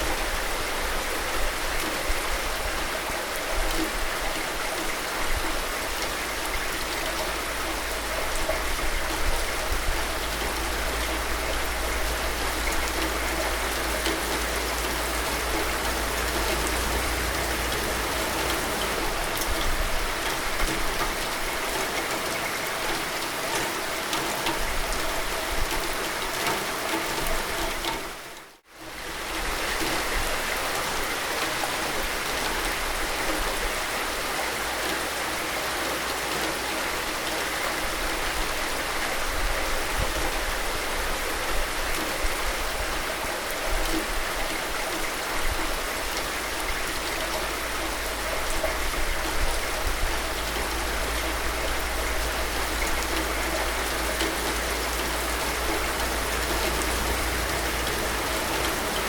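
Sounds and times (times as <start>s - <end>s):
dense rainfall: 0.0s - 59.0s.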